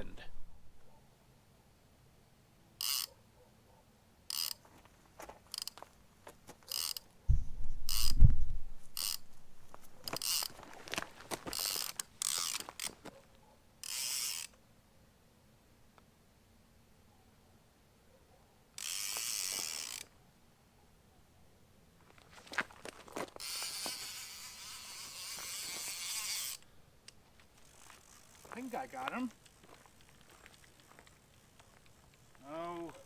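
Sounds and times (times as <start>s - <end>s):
fishing reel clicker ratcheting: 2.8s - 3.1s, 4.3s - 4.6s, 5.5s - 5.8s, 6.7s - 7.0s, 7.9s - 8.2s, 9.0s - 9.3s, 10.0s - 10.5s, 11.5s - 12.9s, 13.8s - 14.6s, 18.8s - 20.1s, 23.4s - 28.7s.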